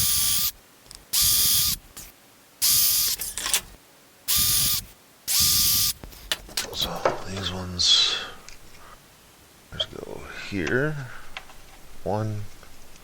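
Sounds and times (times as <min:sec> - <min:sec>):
power drill whining: 0:00.0 - 0:00.5, 0:01.2 - 0:01.8, 0:02.6 - 0:03.2, 0:04.3 - 0:06.0.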